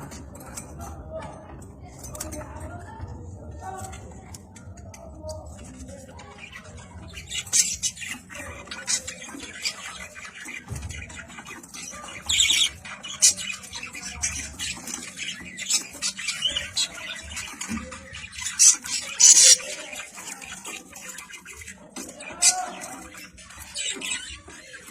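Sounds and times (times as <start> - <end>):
budgerigars chattering and squawking: 5.6 - 24.9.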